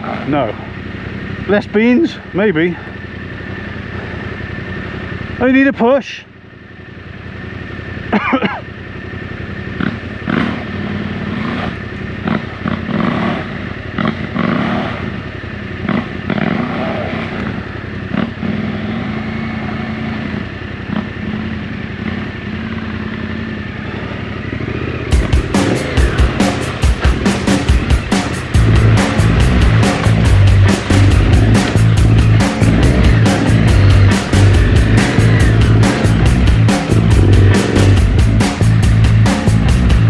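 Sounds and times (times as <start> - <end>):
motorcycle engine running: 0.0 - 40.0.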